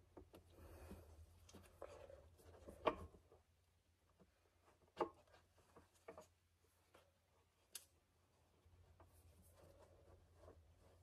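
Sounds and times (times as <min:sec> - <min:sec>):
faint clicks of small parts: 0:07.6 - 0:08.0.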